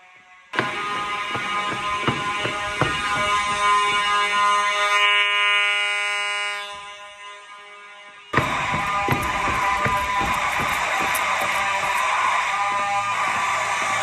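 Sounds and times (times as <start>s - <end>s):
fire alarm horns: 3.2s - 7.2s.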